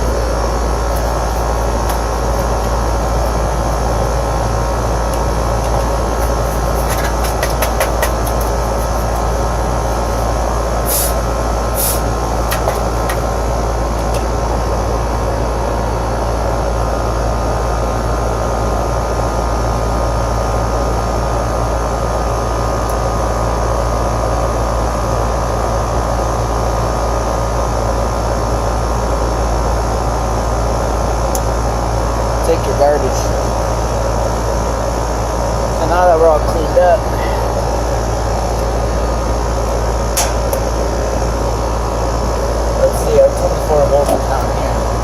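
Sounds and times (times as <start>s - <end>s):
air conditioning hum: 0.0s - 45.0s
short high hisses: 10.8s - 12.1s.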